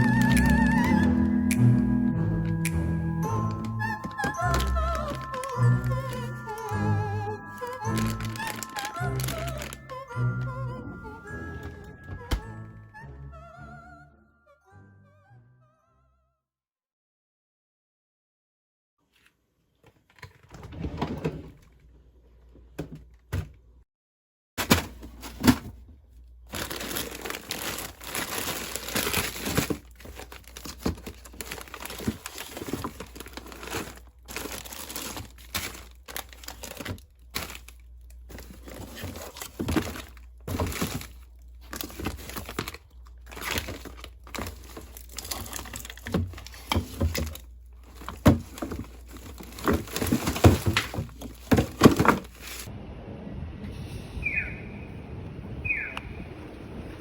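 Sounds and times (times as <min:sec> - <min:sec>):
plastic packaging crinkling: 0:00.0 - 0:01.7, 0:03.2 - 0:10.5, 0:26.3 - 0:52.7.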